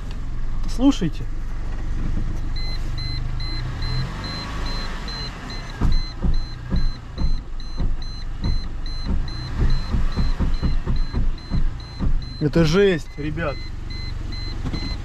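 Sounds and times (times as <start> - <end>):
car engine running: 0.0 - 15.0
car warning chime beeping: 2.4 - 15.0
wheel knocking: 3.4 - 15.0.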